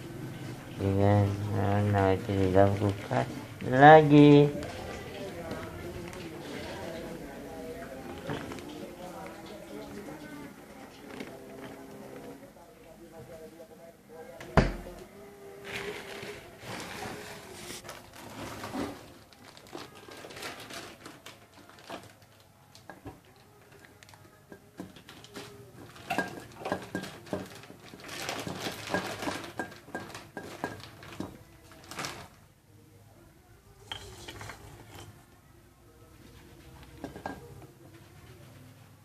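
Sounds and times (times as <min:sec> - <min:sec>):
dishes and utensils clinking: 0:24.5 - 0:31.4, 0:33.8 - 0:35.2, 0:36.8 - 0:37.7.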